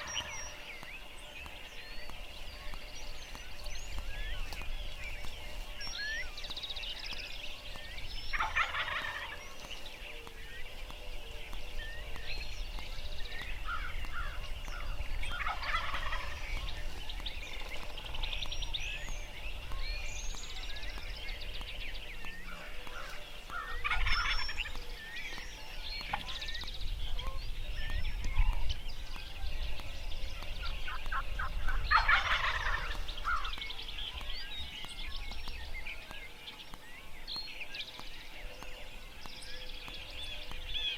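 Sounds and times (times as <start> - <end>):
small birds chirping: 0.0 - 40.9
turkey gobbling: 8.3 - 9.4, 13.6 - 16.9, 22.5 - 24.8, 30.4 - 33.8.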